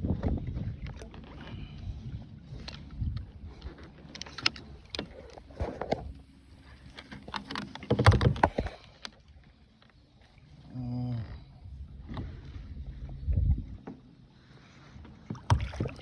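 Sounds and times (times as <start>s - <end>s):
knocks and clicks on kayak: 6.8s - 9.1s, 15.3s - 16.0s.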